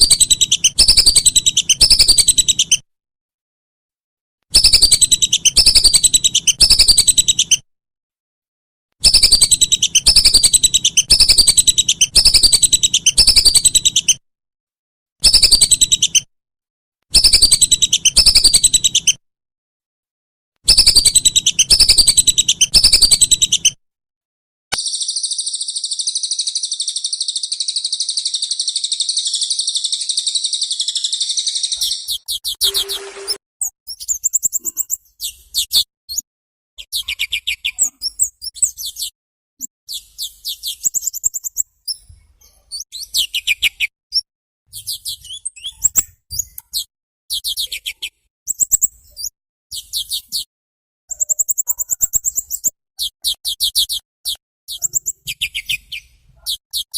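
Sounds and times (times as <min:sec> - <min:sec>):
high buzzy bird trill: 0:30.8 - 0:33.4.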